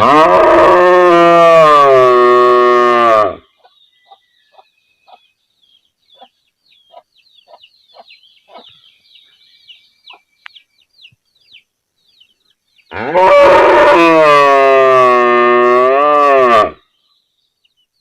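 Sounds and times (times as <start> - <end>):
cow mooing: 0.0 - 3.4, 12.9 - 16.8
small birds chirping: 3.4 - 13.0, 16.8 - 18.0
chickens clucking: 3.6 - 12.5.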